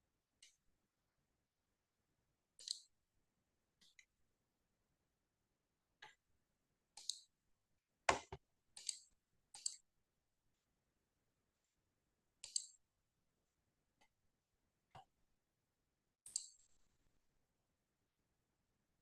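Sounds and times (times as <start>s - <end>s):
computer mouse clicks: 2.6s - 2.9s, 7.0s - 7.3s, 8.1s - 9.8s, 12.4s - 12.8s, 16.3s - 16.8s.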